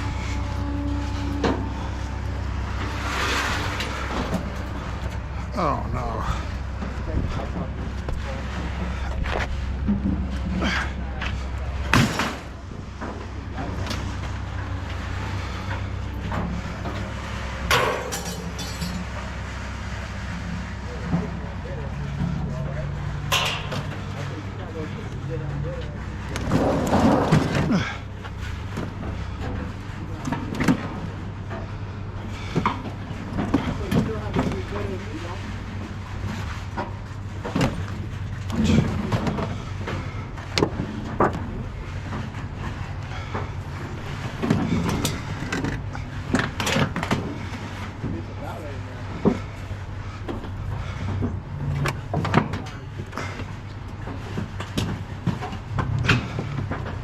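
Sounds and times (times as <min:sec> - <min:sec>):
low steady hum: 0:00.0 - 0:57.0
scrap metal clanking: 0:00.0 - 0:57.0
knocks and clatters: 0:06.4 - 0:19.3, 0:32.3 - 0:48.3.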